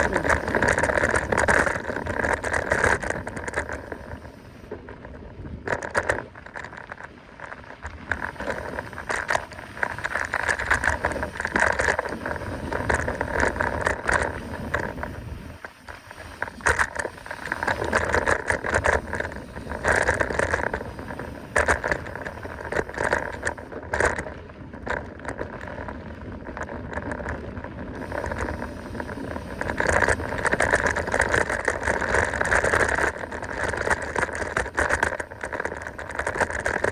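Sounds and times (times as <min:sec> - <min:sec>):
bike rattling and clicking: 0:00.0 - 0:36.9
tyres rolling on trail: 0:00.0 - 0:36.9.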